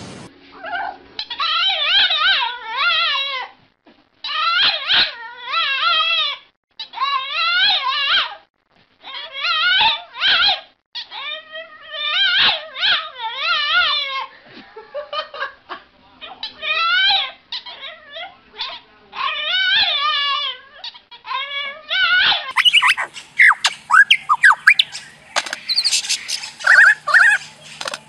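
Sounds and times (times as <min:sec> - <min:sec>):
dog howling and whining: 0:00.6 - 0:03.5, 0:11.1 - 0:14.1
animal clicks and squeaky chirps: 0:22.5 - 0:28.0.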